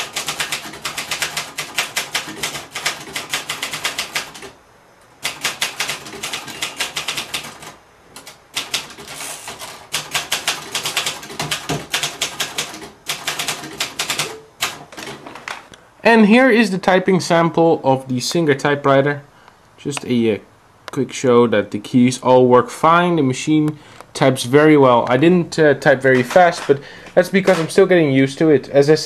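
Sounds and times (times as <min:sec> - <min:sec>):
typewriter keys striking: 0:00.0 - 0:04.6, 0:05.2 - 0:15.4, 0:27.4 - 0:27.8.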